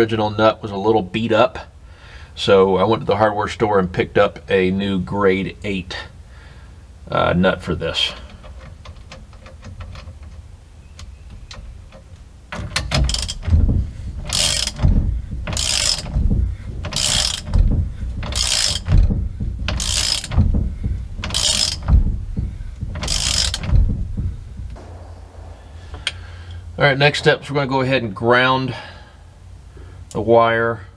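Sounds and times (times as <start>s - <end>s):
ratchet wrench ratcheting: 12.7s - 13.6s, 14.2s - 16.2s, 16.8s - 17.6s, 18.2s - 19.0s, 19.7s - 20.4s, 21.2s - 21.9s, 22.9s - 23.8s.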